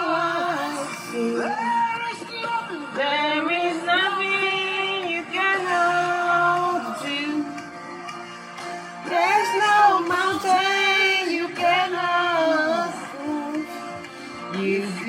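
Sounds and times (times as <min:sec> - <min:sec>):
pop song with vocals: 0:00.0 - 0:15.0.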